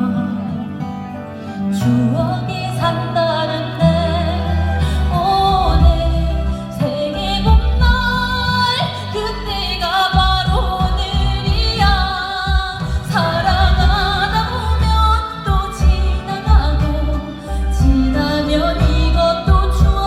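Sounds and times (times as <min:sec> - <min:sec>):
woman singing with vibrato: 0:00.0 - 0:20.0
backing track with heavy bass beat: 0:04.8 - 0:08.6, 0:09.2 - 0:20.0.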